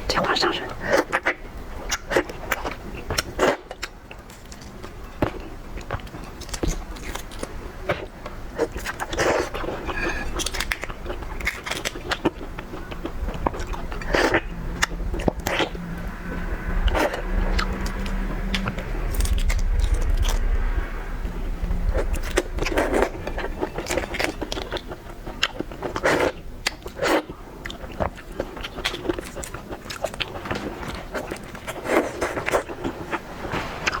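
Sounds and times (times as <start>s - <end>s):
chewing and crunching: 0.8s - 20.5s, 21.8s - 34.0s
low rumble: 12.4s - 25.4s.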